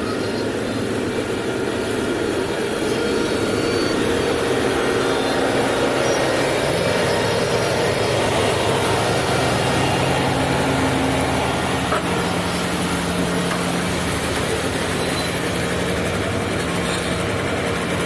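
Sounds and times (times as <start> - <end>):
heavy machine engine droning: 0.0 - 18.0.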